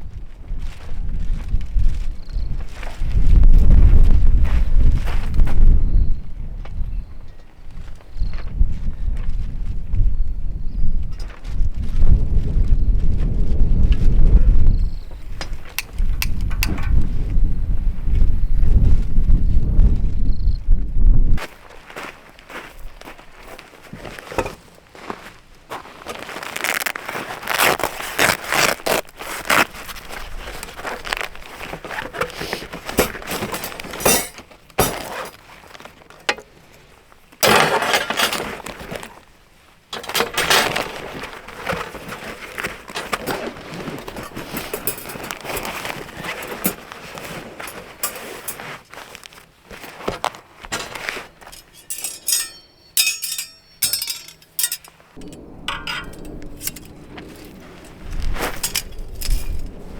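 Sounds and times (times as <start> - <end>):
hard objects clinking and scraping: 15.2 - 17.0, 32.0 - 35.3, 50.7 - 59.8.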